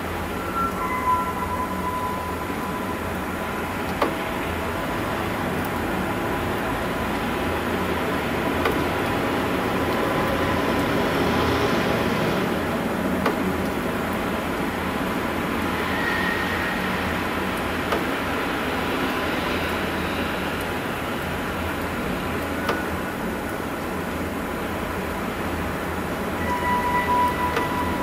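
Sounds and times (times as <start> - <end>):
brief higher tone: 0.1 - 4.5, 26.4 - 28.0
faint held tones: 0.3 - 4.1.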